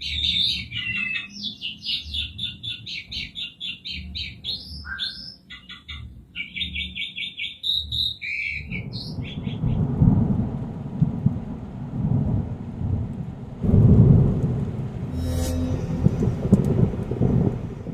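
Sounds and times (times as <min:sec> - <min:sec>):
starling chattering calls: 0:00.0 - 0:08.6
loud low rumbling: 0:09.8 - 0:17.9.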